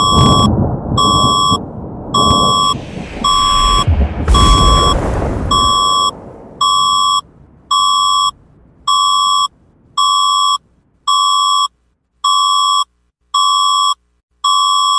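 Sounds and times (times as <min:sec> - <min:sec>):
thunder and explosion effect: 0:00.1 - 0:10.6.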